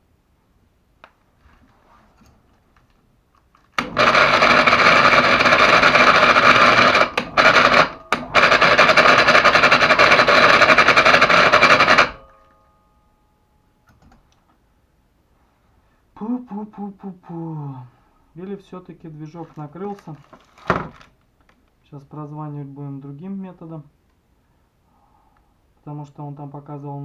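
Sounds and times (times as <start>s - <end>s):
electric hoist motor rattling buzz: 3.8s - 12.3s.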